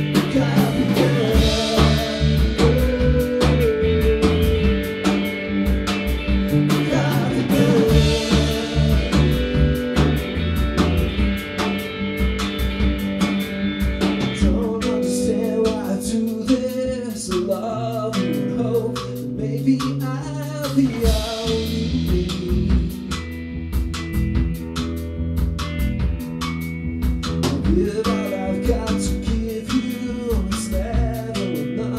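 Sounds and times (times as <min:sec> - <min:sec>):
person singing: 0:00.0 - 0:05.4, 0:06.6 - 0:10.3, 0:14.4 - 0:22.9, 0:27.6 - 0:31.9
band with guitar and drums: 0:00.0 - 0:31.9.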